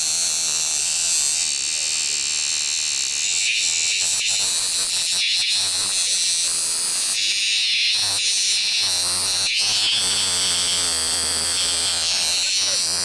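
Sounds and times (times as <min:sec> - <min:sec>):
insects and frogs buzzing and trilling: 0:00.0 - 0:13.0.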